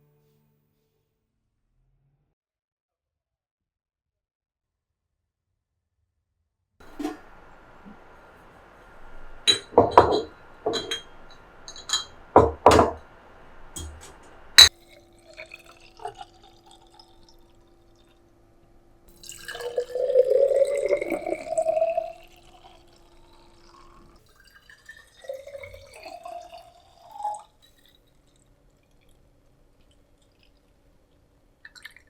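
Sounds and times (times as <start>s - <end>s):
water running into a glass jar: 6.8s - 18.2s, 19.1s - 32.0s
sharp glass clink: 9.5s - 13.0s.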